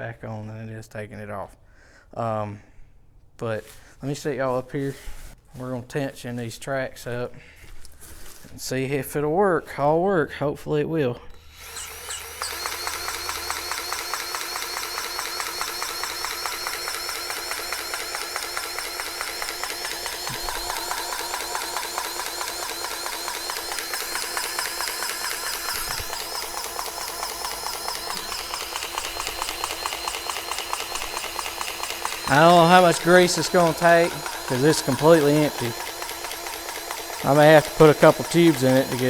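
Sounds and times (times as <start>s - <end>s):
powered grease gun pulsing: 11.3s - 39.0s.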